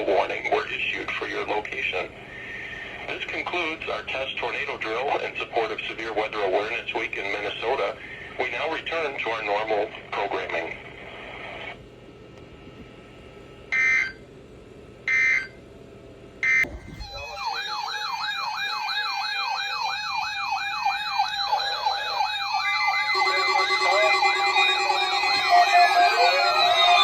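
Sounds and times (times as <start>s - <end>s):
warning sirens wailing: 16.4s - 27.0s.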